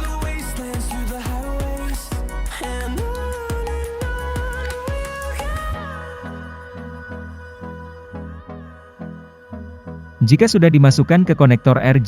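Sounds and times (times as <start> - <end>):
heavy bass: 0.0 - 7.4
background music with steady beat: 0.0 - 12.0.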